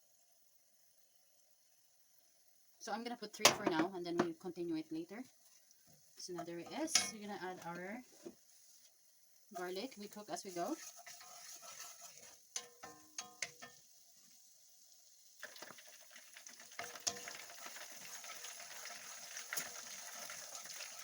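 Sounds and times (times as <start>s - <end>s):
garlic sizzling in oil: 0.1s - 21.0s
metal utensil clinking on pan: 3.4s - 3.9s, 6.4s - 7.4s, 10.8s - 13.8s, 16.8s - 17.4s.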